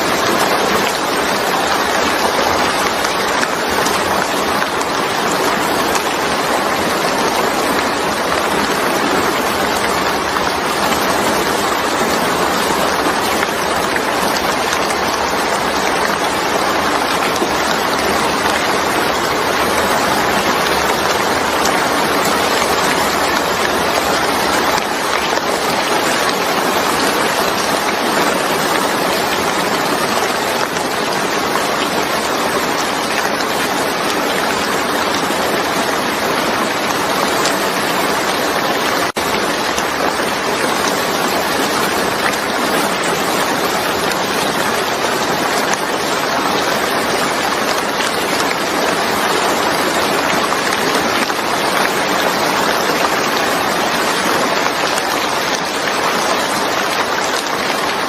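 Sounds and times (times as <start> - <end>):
rain falling steadily: 0.0 - 58.0.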